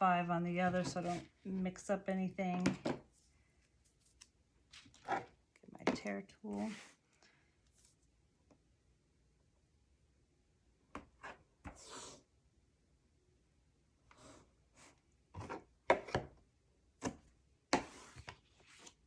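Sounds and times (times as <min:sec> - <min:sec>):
paper rustling: 0:03.8 - 0:05.3.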